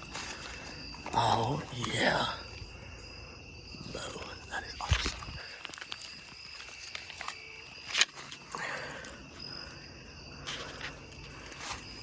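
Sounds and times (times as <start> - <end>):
insects chirring: 0.0 - 12.0.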